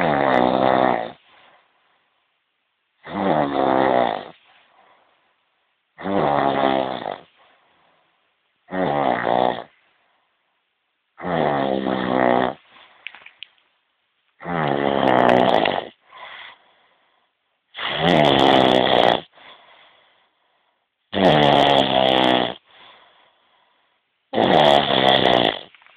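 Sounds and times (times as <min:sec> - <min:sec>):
person snoring: 0:00.0 - 0:01.6, 0:03.0 - 0:04.5, 0:06.0 - 0:07.4, 0:08.7 - 0:09.8, 0:11.2 - 0:12.8, 0:14.4 - 0:16.6, 0:17.7 - 0:20.0, 0:21.1 - 0:23.1, 0:24.3 - 0:25.8
soft breath: 0:01.2 - 0:02.3, 0:04.3 - 0:05.6, 0:07.3 - 0:08.4, 0:12.6 - 0:13.4, 0:16.0 - 0:17.6, 0:19.3 - 0:21.0, 0:22.6 - 0:24.2.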